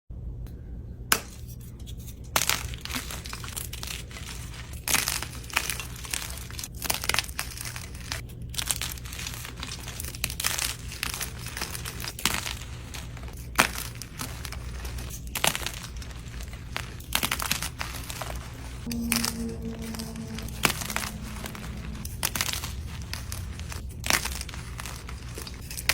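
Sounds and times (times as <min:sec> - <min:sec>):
chalk crushing and crunching: 0:01.9 - 0:18.8, 0:22.0 - 0:25.9
low hum: 0:18.9 - 0:24.9.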